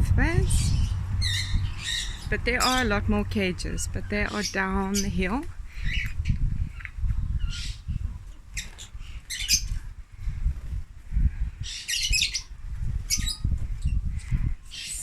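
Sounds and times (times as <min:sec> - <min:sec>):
steady low rumble: 0:00.0 - 0:11.7, 0:12.5 - 0:15.0
parrots chirping and squawking: 0:00.4 - 0:07.9, 0:08.5 - 0:09.8, 0:11.6 - 0:12.5, 0:13.1 - 0:15.0.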